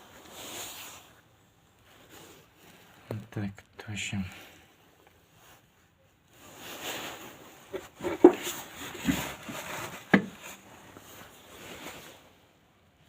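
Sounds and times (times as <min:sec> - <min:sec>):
rustling and scraping of parts: 0:04.8 - 0:12.5.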